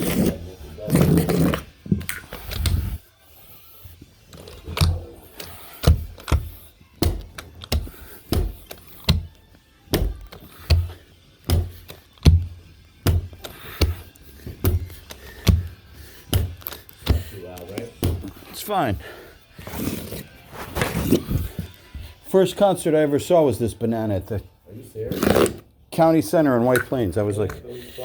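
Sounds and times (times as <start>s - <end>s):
faint radio music: 0.0s - 28.0s
dull thumps: 5.7s - 17.3s.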